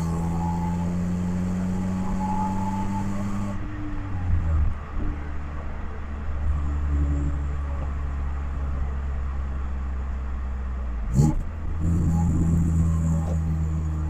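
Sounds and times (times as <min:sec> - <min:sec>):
car engine and road noise: 0:00.0 - 0:14.0.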